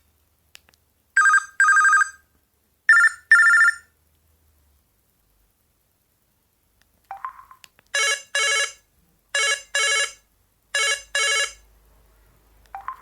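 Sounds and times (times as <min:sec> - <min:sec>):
phone ringtone: 0:01.2 - 0:02.2, 0:02.9 - 0:03.9, 0:08.0 - 0:08.8, 0:09.4 - 0:10.2, 0:10.8 - 0:11.6.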